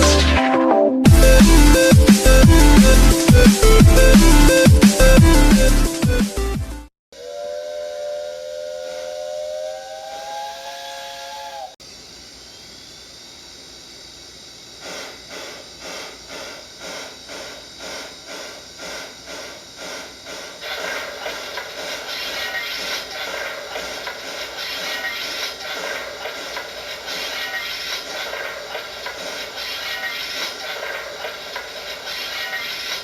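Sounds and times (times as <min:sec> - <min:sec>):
steam exhaust chuffs: 0:01.1 - 0:06.0, 0:07.2 - 0:11.8, 0:14.6 - 0:33.0
hissing steam: 0:07.2 - 0:11.8, 0:14.6 - 0:33.0
steam locomotive chord whistle: 0:07.2 - 0:11.8.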